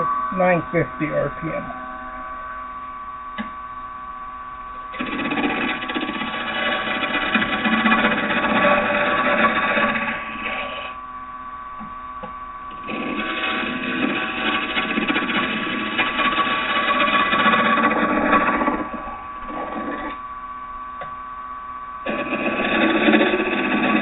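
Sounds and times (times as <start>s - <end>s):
wood lathe motor whine: 0.0s - 11.0s, 11.8s - 21.1s, 22.0s - 24.0s
turning tool scraping wood: 4.9s - 11.0s, 12.7s - 20.2s, 22.1s - 24.0s.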